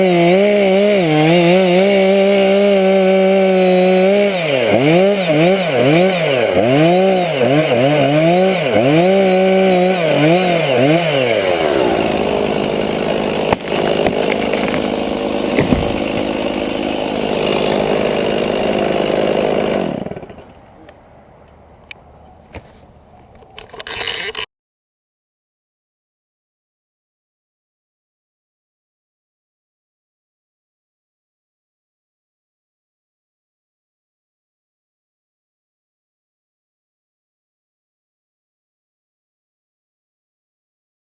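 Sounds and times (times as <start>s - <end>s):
chainsaw engine running: 0.0s - 20.7s, 23.6s - 24.5s
sharp knock: 15.6s - 16.0s.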